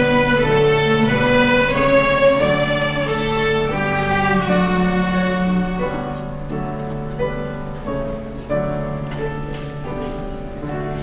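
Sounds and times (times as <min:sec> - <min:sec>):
orchestral bowed strings: 0:00.0 - 0:06.5.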